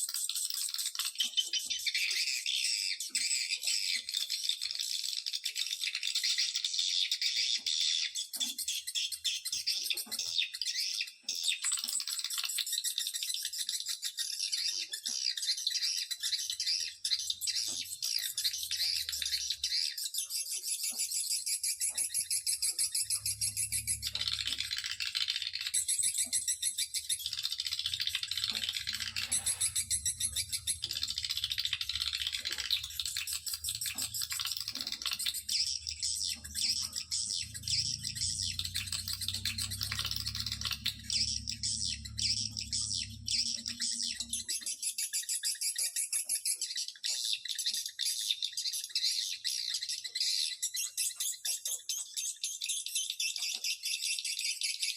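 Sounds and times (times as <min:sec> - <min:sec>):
high-pitched bird chatter and trilling: 0:00.0 - 0:54.9
low hum: 0:37.0 - 0:44.4.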